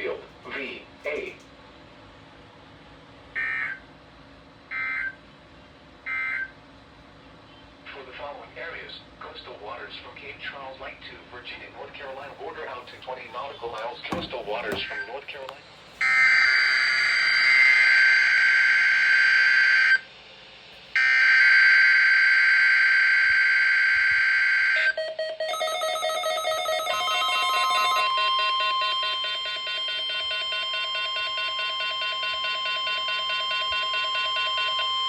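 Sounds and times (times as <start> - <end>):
steady warning alarm tone: 12.2 - 15.2, 21.0 - 35.0.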